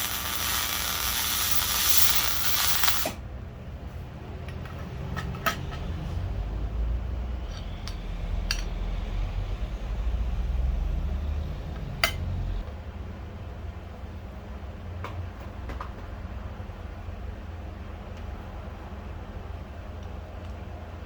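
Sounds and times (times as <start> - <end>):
metal parts clinking: 0.0 - 3.2.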